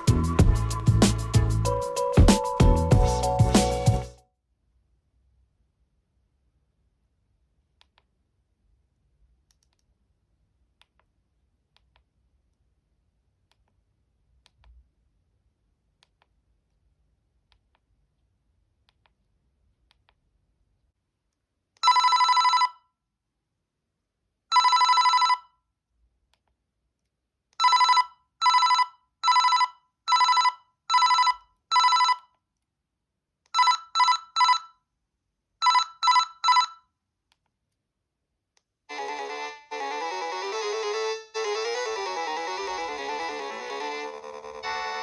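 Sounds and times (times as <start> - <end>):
mobile phone beeping ringtone: 21.8 - 22.8, 24.5 - 25.4, 27.6 - 32.2, 33.6 - 34.7, 35.6 - 36.8.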